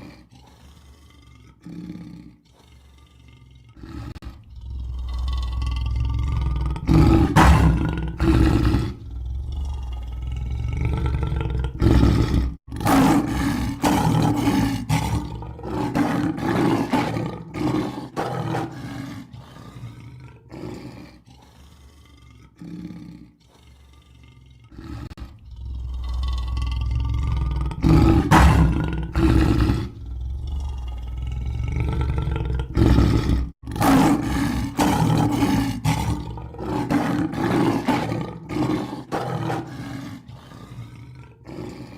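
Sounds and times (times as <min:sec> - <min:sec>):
lion roaring: 0:00.0 - 0:41.9.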